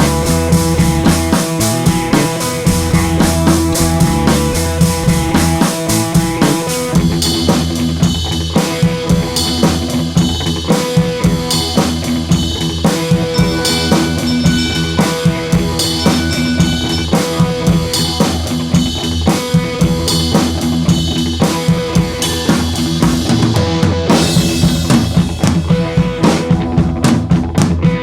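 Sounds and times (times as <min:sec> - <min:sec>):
drum kit beat: 0:00.0 - 0:28.0
sustained pitched instruments: 0:00.1 - 0:06.9, 0:13.2 - 0:17.4.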